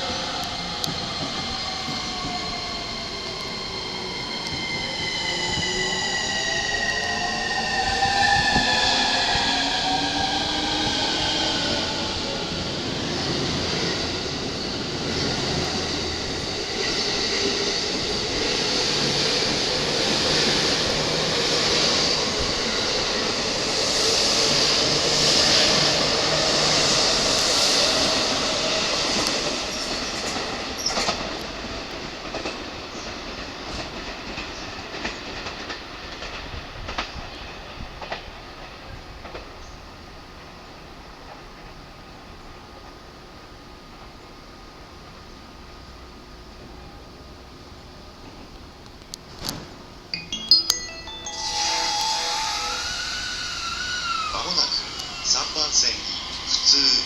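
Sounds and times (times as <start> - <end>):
train motors rising whine: 51.3 - 57.0.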